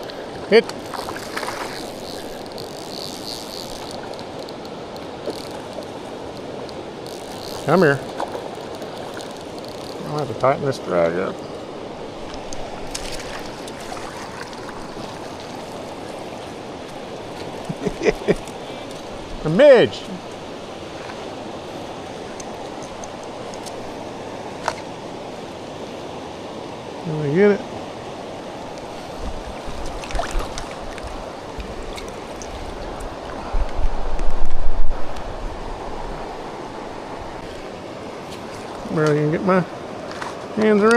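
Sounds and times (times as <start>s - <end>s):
flowing river water: 0.0s - 40.9s
stream rushing over rocks: 0.0s - 40.9s
wind rumble on microphone: 28.8s - 37.5s.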